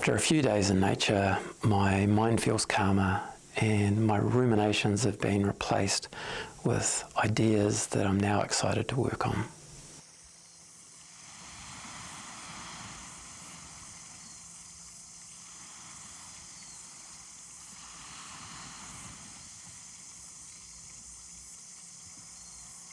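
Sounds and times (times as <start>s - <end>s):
soft wash of noise: 11.1s - 14.2s
high-pitched insect drone: 12.8s - 22.9s.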